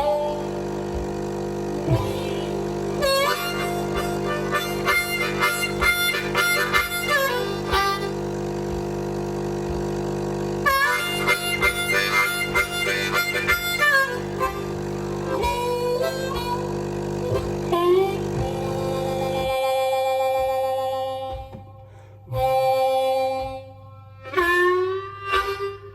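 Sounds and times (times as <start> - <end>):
coffee machine hum: 0.0 - 19.8
blues harmonica with bent notes: 0.0 - 25.9.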